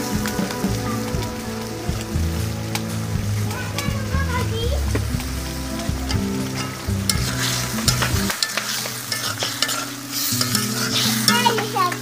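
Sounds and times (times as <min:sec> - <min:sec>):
fish sizzling in a pan: 0:00.0 - 0:12.0
utensil scraping a pan: 0:06.0 - 0:12.0.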